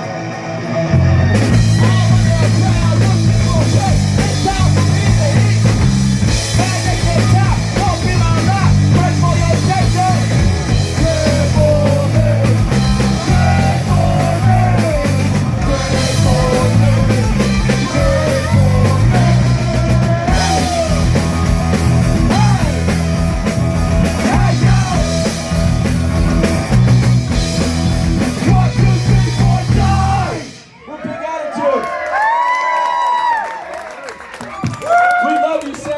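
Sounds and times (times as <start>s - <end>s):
heavy bass and drum kit: 0.0s - 30.7s
live rock band playing: 0.0s - 30.7s.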